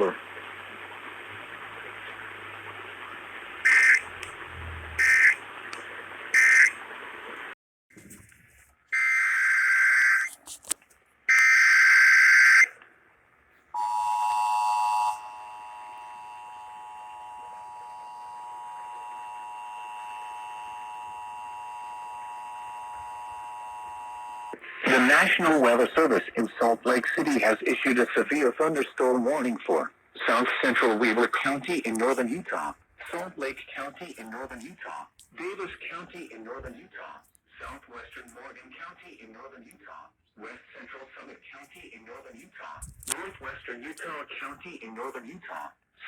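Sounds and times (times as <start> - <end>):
radio hiss: 0.0 - 7.6, 13.8 - 45.8
data-burst screeches: 3.6 - 5.4, 6.4 - 6.8
two-tone attention signal: 13.8 - 24.6.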